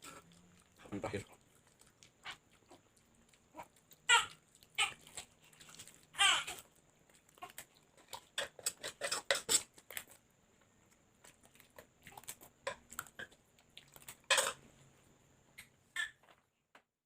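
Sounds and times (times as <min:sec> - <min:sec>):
chewing: 0:00.0 - 0:14.6
cutlery clatter: 0:08.4 - 0:09.7, 0:14.3 - 0:14.6.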